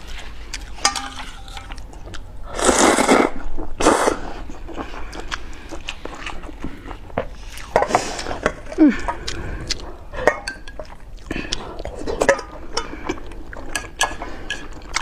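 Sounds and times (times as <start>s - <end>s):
noodles being chewed: 0.0s - 15.0s
loud slurps: 2.5s - 4.4s.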